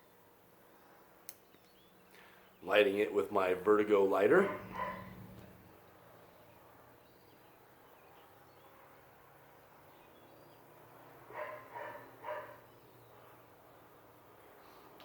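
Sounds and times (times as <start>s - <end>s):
faint dog barking: 4.4s - 5.4s, 11.3s - 12.7s.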